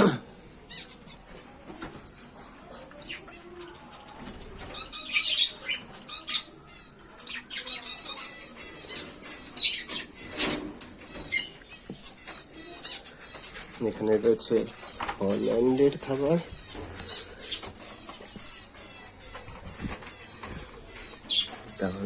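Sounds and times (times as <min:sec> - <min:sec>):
birds fluttering wings: 0:10.4 - 0:21.8.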